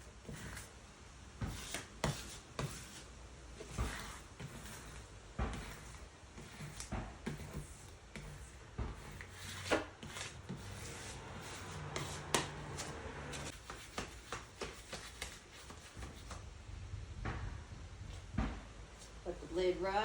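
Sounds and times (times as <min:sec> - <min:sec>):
low steady hum: 0:16.0 - 0:20.0.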